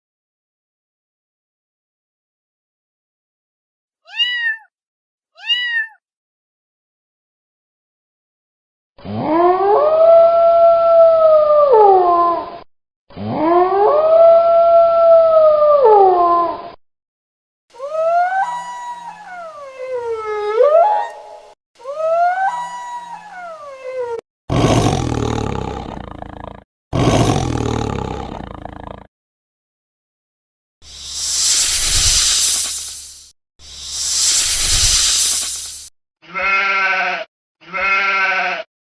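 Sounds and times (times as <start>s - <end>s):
animal howls: 9.2s - 12.5s, 13.3s - 16.6s, 17.8s - 24.2s
rough roars: 24.5s - 29.1s.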